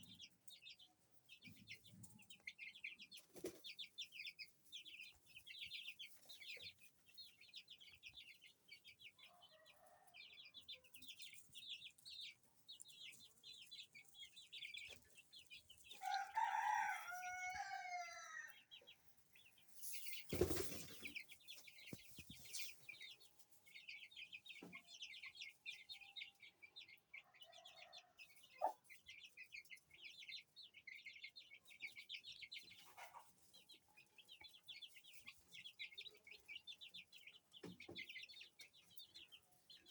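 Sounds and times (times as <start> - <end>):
chicks peeping: 0.0 - 39.9
rooster crowing: 16.0 - 18.6.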